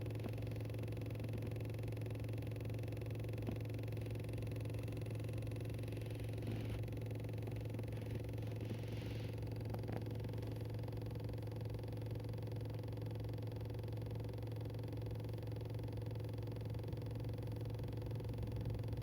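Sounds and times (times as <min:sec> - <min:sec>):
low drone inside car cabin: 0:00.0 - 0:10.8, 0:16.3 - 0:19.0.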